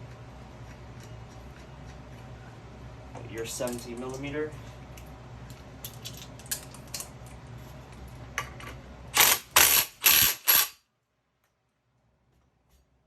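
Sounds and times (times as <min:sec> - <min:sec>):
impact wrench bursts: 0:09.1 - 0:10.8.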